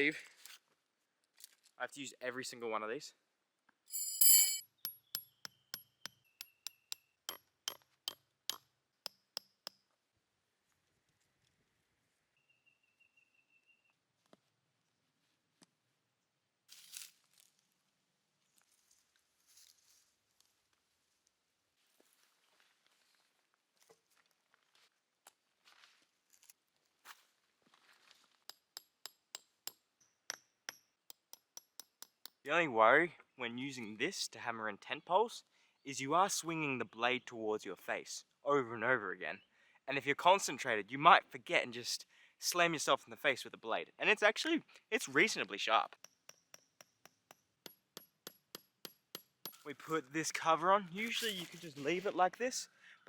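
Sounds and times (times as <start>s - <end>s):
hammer tapping metal tent peg: 4.0s - 9.8s, 28.5s - 32.4s, 46.0s - 49.6s.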